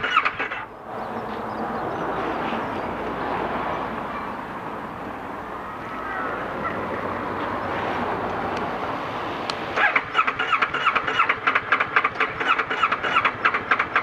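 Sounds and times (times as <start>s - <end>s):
starter motor cranking engine: 0.0s - 0.7s, 9.8s - 14.0s
steady background noise: 0.0s - 14.0s.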